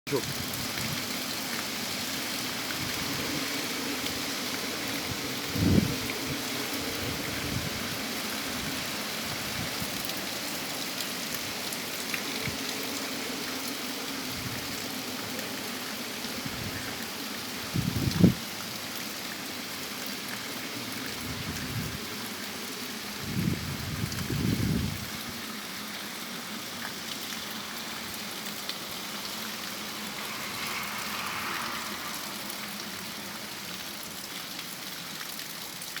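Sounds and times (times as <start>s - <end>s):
heavy rain hissing: 0.1s - 35.8s
wind gusts on microphone: 2.6s - 10.1s, 14.2s - 15.0s, 16.3s - 17.0s, 17.6s - 18.4s, 21.2s - 22.2s, 23.2s - 25.4s, 29.4s - 33.8s.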